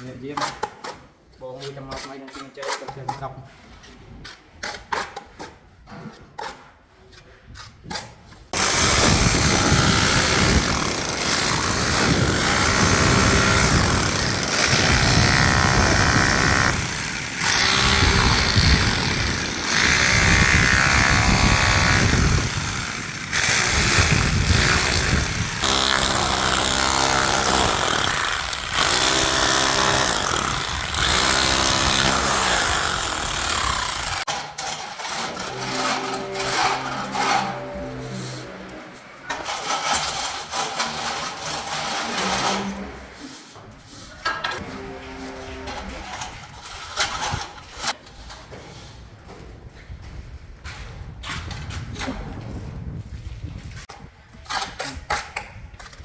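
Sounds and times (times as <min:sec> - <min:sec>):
power tool running: 0:08.6 - 0:34.3.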